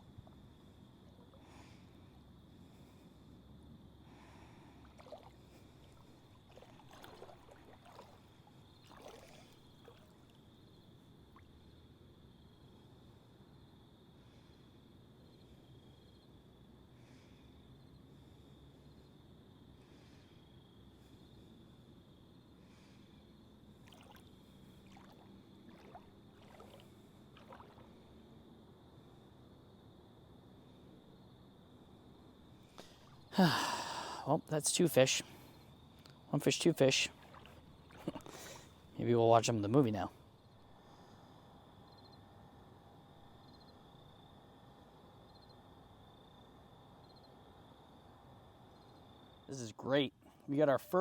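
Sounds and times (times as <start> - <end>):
faint water sloshing: 0.0 - 11.8, 22.6 - 29.3, 32.6 - 41.3.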